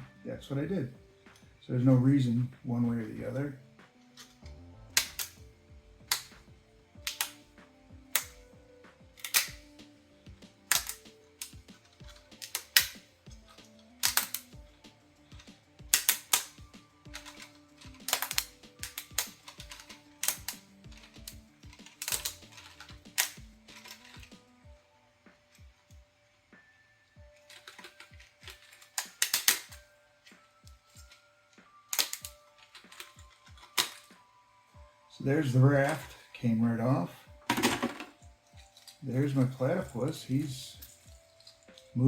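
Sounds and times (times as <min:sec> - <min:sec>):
soft background music: 0:00.0 - 0:42.0
plastic cracking and snapping: 0:04.0 - 0:06.4, 0:07.0 - 0:07.4, 0:09.2 - 0:09.8, 0:10.7 - 0:14.7, 0:15.3 - 0:24.5, 0:27.4 - 0:34.3.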